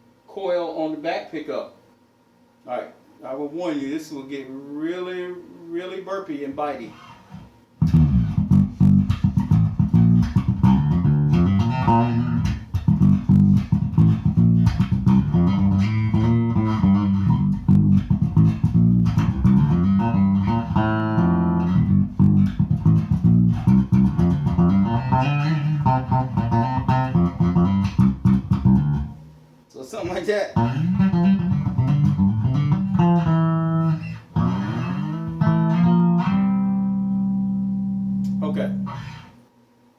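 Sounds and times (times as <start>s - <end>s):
electric bass plucked notes: 7.8s - 29.2s, 30.1s - 39.3s.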